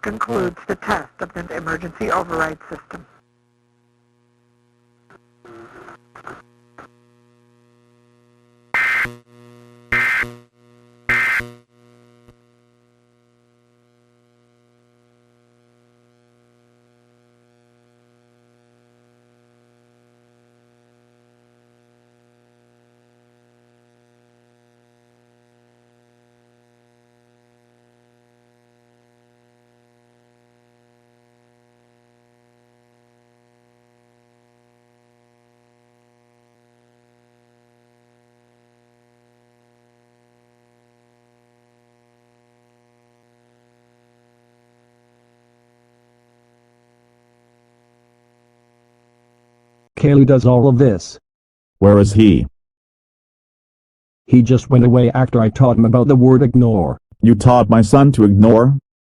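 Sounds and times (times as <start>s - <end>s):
low electrical hum: 0.0s - 20.7s
harsh digital data bursts: 8.8s - 9.1s, 9.9s - 10.4s, 11.1s - 11.5s.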